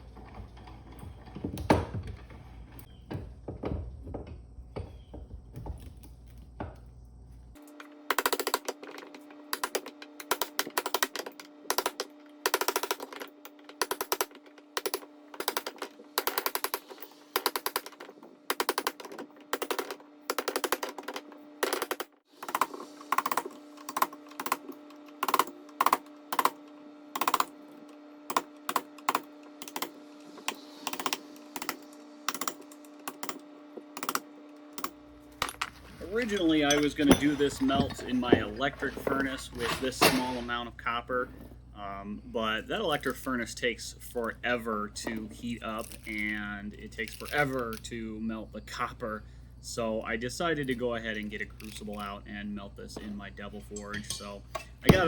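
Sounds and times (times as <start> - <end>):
sharp clicks and knocks on motor parts: 7.6 - 35.8.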